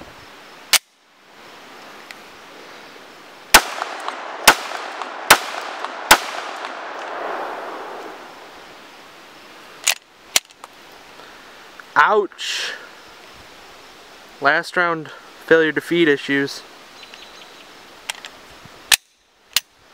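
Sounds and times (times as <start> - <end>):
pistol shots: 3.5 - 7.6.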